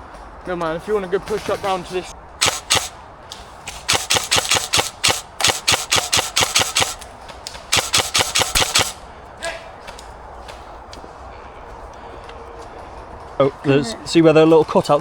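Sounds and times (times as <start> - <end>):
airsoft rifle rapid shots: 2.4 - 9.1.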